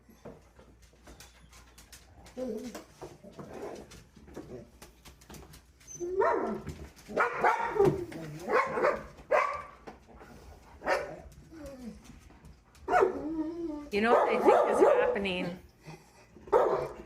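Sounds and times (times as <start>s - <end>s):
dogs whining and yipping: 5.7s - 9.0s, 11.0s - 12.2s, 12.9s - 14.0s.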